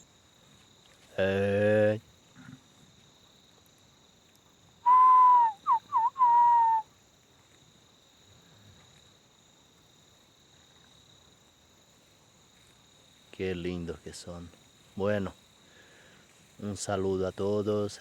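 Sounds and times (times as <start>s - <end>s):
crickets chirping: 0.0s - 18.0s
loud whistle: 4.8s - 6.8s.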